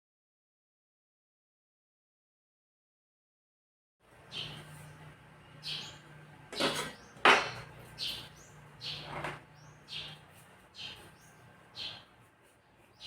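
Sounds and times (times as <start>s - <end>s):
small bird chirping: 4.2s - 13.0s.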